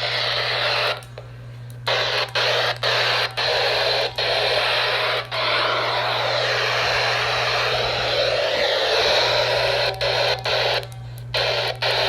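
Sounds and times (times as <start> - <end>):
radio static hissing: 0.0 - 1.1, 1.9 - 12.0
steady low hum: 0.0 - 12.0.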